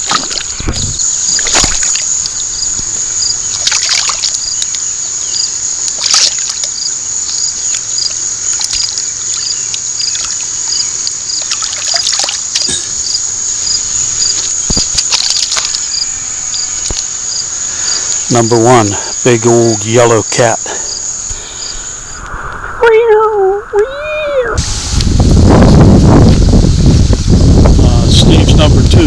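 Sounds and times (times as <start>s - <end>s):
water splashing: 0.0s - 4.8s, 5.9s - 6.7s, 10.0s - 18.8s
high insect drone: 0.0s - 29.0s.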